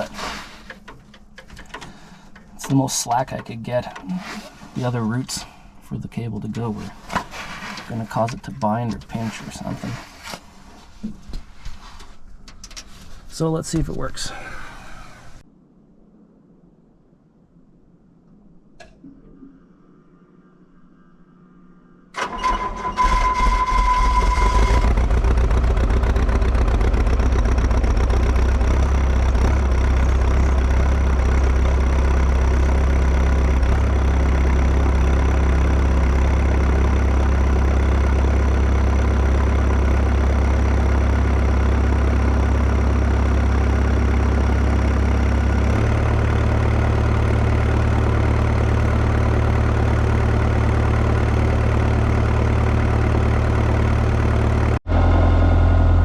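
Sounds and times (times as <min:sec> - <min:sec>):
diesel engine idling: 0:22.2 - 0:56.0.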